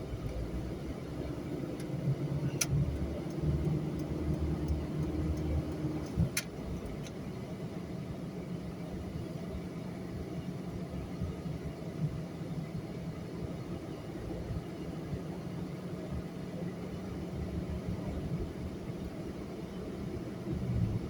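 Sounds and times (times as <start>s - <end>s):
car engine and road noise: 0.0s - 21.0s.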